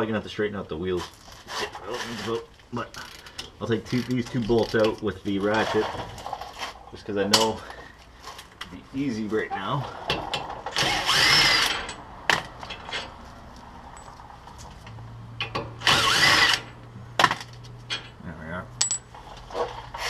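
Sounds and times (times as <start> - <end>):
power tool motor whirring: 10.8 - 11.9, 15.8 - 16.8.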